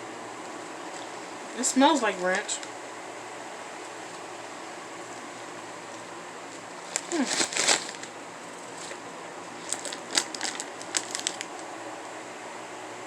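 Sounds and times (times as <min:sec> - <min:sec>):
corn snacks crunching: 0:06.8 - 0:11.7.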